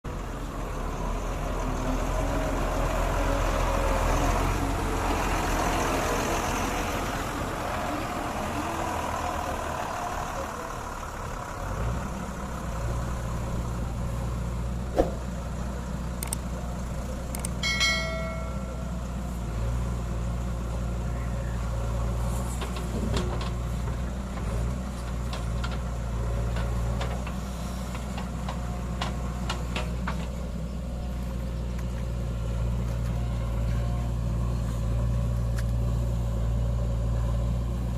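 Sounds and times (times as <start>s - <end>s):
diesel engine under load: 0.0s - 37.9s
brief high tone: 17.6s - 19.0s.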